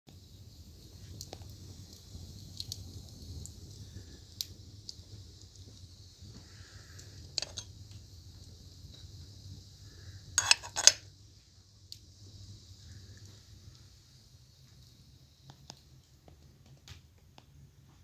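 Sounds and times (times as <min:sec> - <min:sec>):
fire popping: 0:00.1 - 0:18.0
wood fire crackling: 0:00.1 - 0:18.0.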